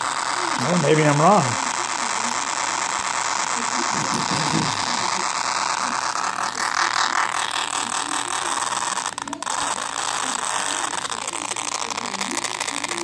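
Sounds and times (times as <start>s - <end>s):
phone speaker crackling buzz: 0.0s - 13.0s.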